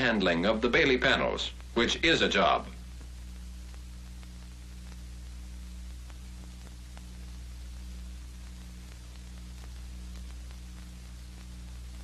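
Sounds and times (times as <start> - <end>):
film soundtrack hiss: 0.0 - 12.0
low electrical hum: 0.0 - 12.0
faint clicks: 2.7 - 12.0.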